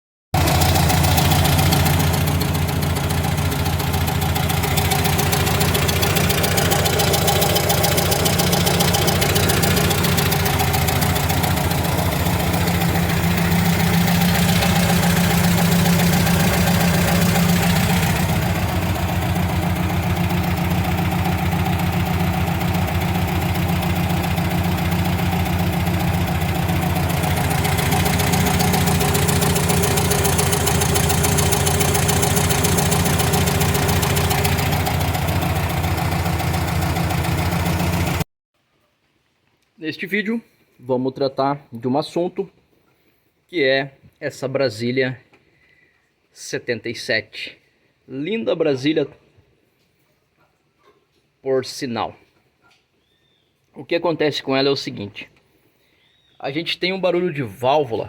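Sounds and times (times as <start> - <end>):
car engine idling with knocking: 0.4 - 38.2.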